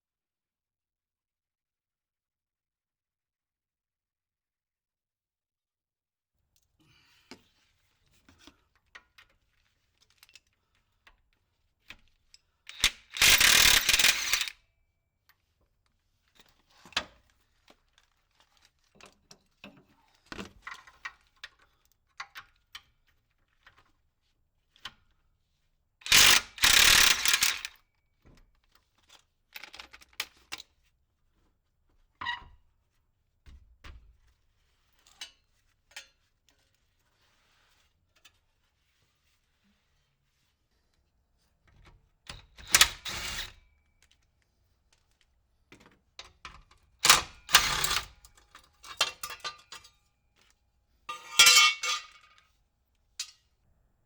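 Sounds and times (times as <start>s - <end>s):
hand ratchet clicking: 12.7s - 14.5s, 26.1s - 27.7s
power wrench bursts: 12.7s - 14.5s, 26.1s - 27.7s, 47.5s - 48.0s
tool clinks: 12.7s - 14.5s, 26.1s - 27.7s, 51.1s - 52.4s.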